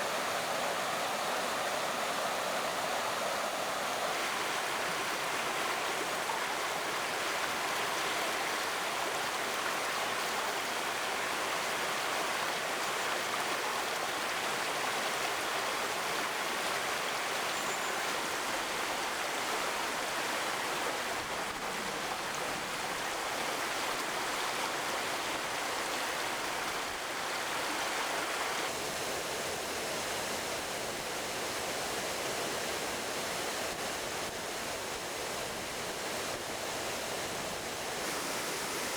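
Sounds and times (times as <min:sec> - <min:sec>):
water rushing over rocks: 0:35.6 - 0:38.9.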